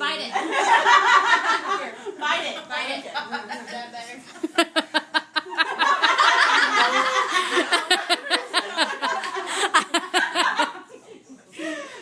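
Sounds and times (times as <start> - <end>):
women laughing: 4.4 - 12.0.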